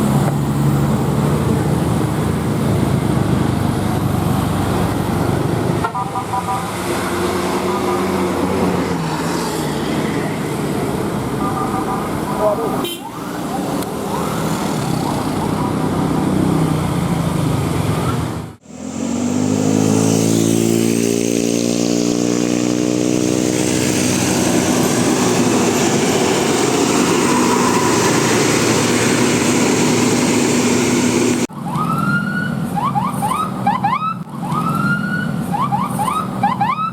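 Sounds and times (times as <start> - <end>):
road traffic noise: 0.0 - 36.9
multi-tone bus horn: 5.8 - 8.4, 11.3 - 13.2
bus engine accelerating: 13.3 - 31.6.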